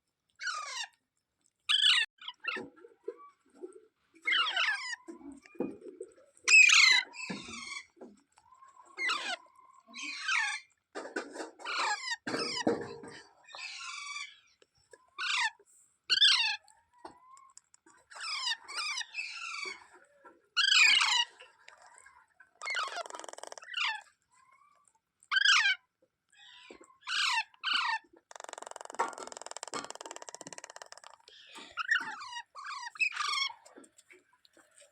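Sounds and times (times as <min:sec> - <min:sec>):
parakeet harsh rasping calls: 0:00.4 - 0:00.9, 0:22.6 - 0:24.0.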